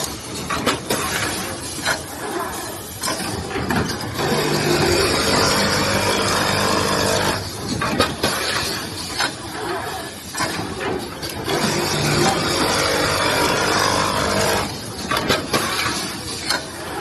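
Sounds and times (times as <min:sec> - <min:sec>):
sharp mechanical clacks: 0:00.0 - 0:17.0
sewing machine humming: 0:04.2 - 0:07.4, 0:11.4 - 0:14.8.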